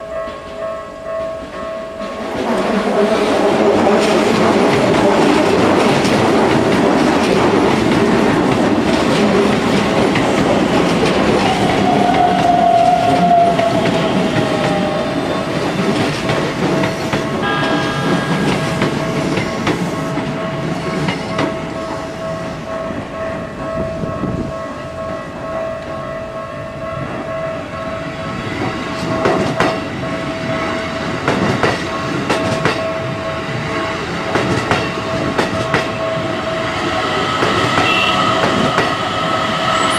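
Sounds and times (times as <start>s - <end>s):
train wheels rumbling on rails: 0.1s - 39.9s
pulsing crossing warning tone: 35.9s - 39.9s.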